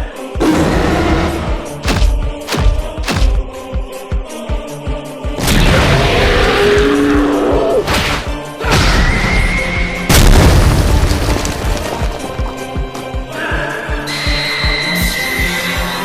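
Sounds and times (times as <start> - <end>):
dramatic music: 0.3 - 4.4
booming impacts with rumble: 1.7 - 3.8.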